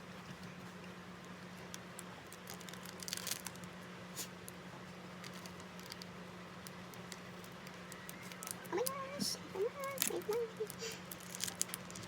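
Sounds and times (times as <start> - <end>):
plastic wrapper crinkling: 1.6 - 3.8, 4.4 - 12.0
wrapper tearing: 2.2 - 3.7, 5.2 - 9.0, 9.8 - 12.0.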